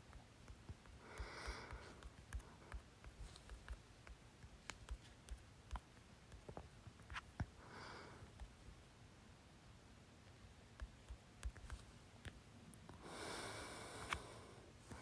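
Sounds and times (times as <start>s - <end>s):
soft clicks: 0.0s - 7.6s, 10.3s - 13.0s
faint breathing: 0.9s - 3.5s, 7.6s - 8.4s, 13.0s - 15.0s.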